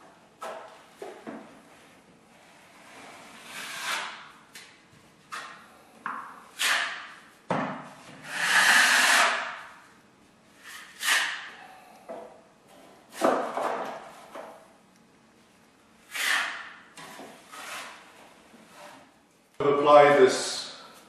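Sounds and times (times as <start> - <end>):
drywall knife scraping compound: 2.4 - 4.4, 6.5 - 7.3, 8.2 - 9.7, 10.6 - 11.6, 13.1 - 14.5, 16.1 - 19.1.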